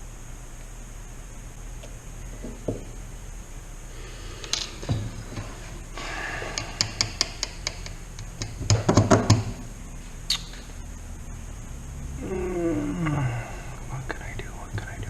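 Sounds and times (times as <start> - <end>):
hand tools clicking and knocking: 6.4 - 9.6.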